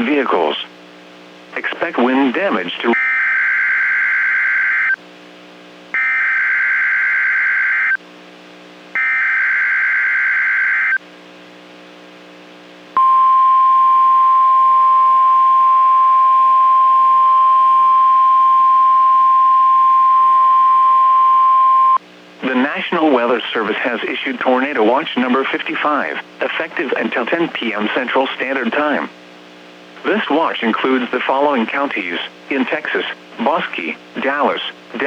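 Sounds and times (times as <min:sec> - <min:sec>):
steady warning alarm tone: 0:06.0 - 0:08.0, 0:09.0 - 0:11.0.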